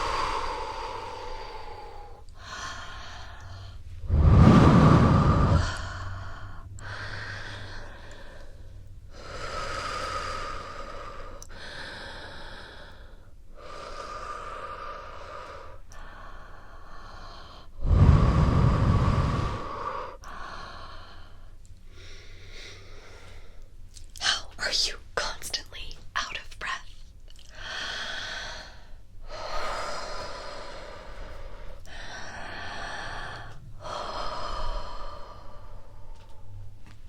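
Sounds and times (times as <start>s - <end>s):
woman breathing deeply: 0.0s - 23.8s, 27.4s - 37.0s
low rushing rumble: 3.4s - 8.0s, 17.8s - 20.0s.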